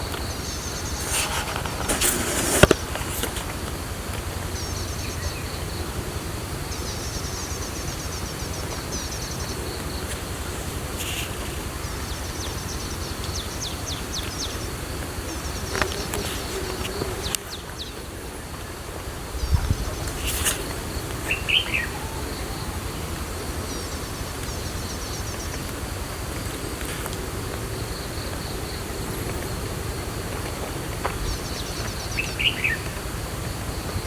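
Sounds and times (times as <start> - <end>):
small birds trilling: 4.3 - 25.7, 27.6 - 34.0.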